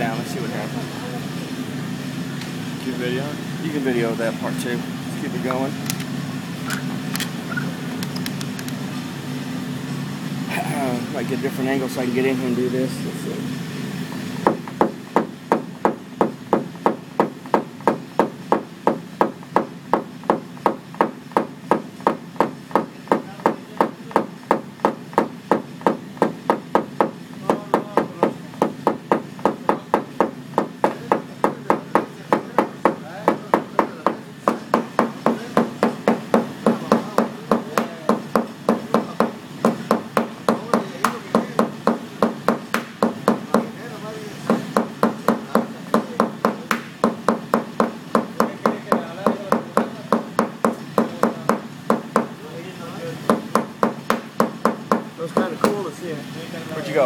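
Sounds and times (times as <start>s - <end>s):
hammer tapping on sheet metal: 14.4s - 43.8s, 44.5s - 52.4s, 53.3s - 55.8s.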